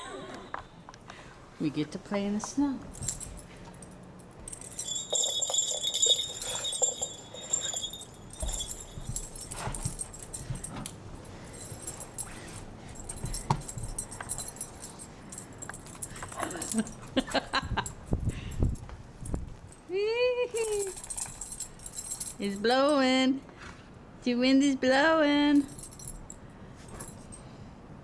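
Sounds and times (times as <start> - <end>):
dog collar tags jingling: 2.8 - 19.8, 20.5 - 23.2, 25.5 - 27.5.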